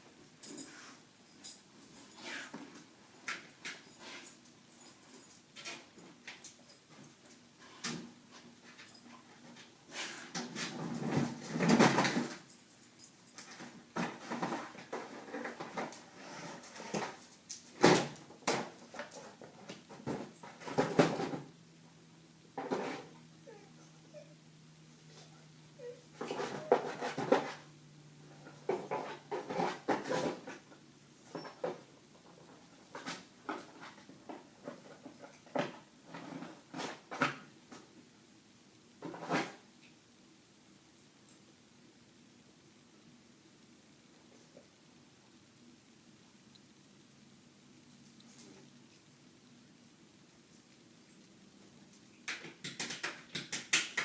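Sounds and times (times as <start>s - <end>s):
dog rummaging rustling and scraping: 0.4s - 12.6s, 13.4s - 21.5s, 22.6s - 23.2s, 26.2s - 27.7s, 28.4s - 37.5s.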